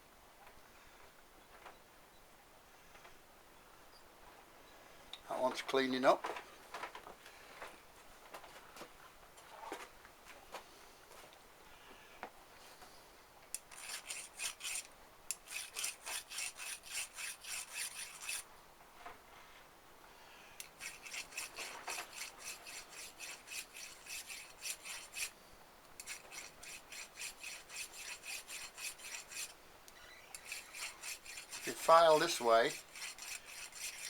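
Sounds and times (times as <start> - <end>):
hand file rasping on metal: 13.6 - 18.4, 20.6 - 25.4, 26.0 - 29.6, 30.3 - 34.0.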